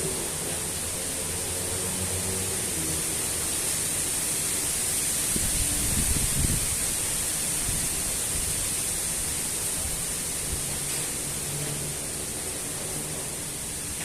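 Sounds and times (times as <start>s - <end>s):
wind buffeting microphone: 5.3s - 7.0s
strong wind blowing: 5.3s - 10.7s.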